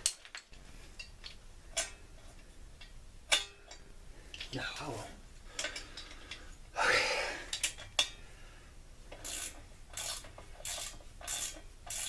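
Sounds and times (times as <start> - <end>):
ratchet wrench rasping: 9.2 - 12.0.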